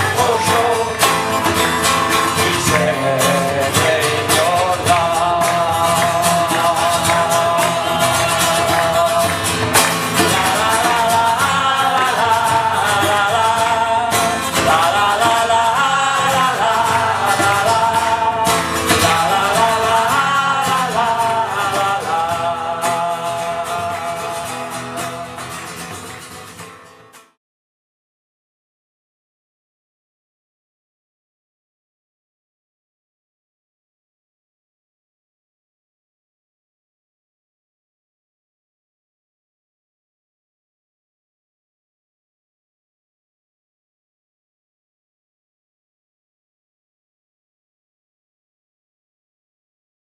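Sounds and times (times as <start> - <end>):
person singing: 0.0 - 25.6
strummed acoustic guitar: 0.0 - 27.4.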